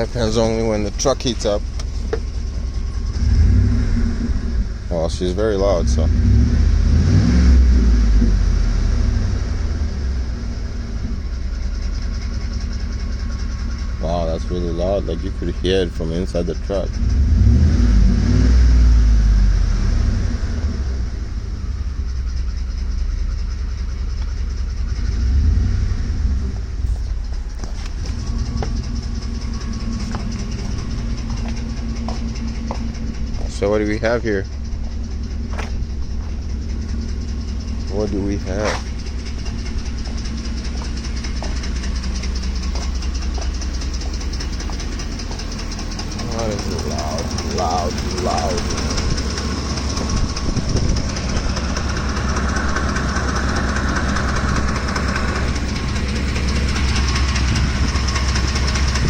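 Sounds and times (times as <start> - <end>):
engine running with loud noise: 0.0 - 59.0.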